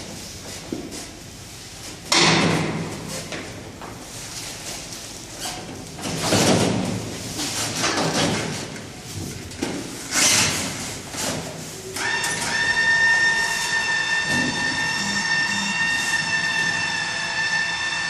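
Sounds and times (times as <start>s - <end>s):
high-pitched mechanical whine: 12.0s - 18.0s.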